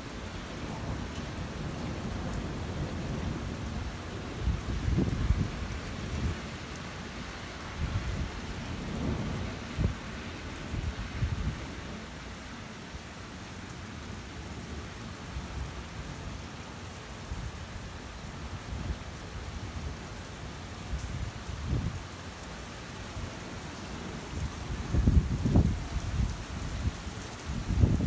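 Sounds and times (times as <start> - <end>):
steady rain falling: 0.0 - 28.0
thunder rumbling: 7.8 - 12.0.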